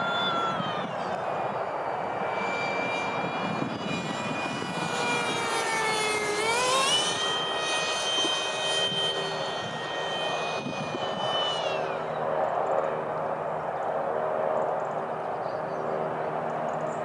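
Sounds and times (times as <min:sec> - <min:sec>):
electric ducted fan whining: 0:00.0 - 0:17.0.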